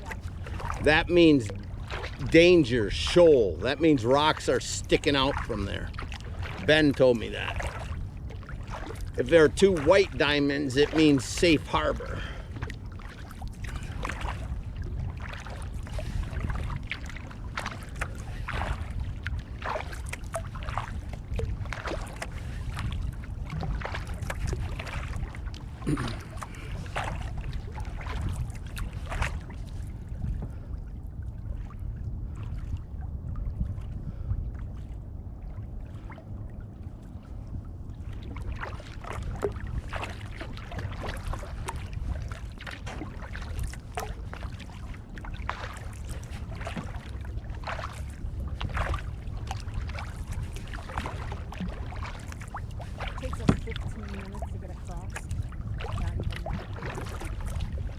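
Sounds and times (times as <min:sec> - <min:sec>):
paddle splashing in water: 0:00.0 - 0:57.9
steady low rumble: 0:00.0 - 0:57.9.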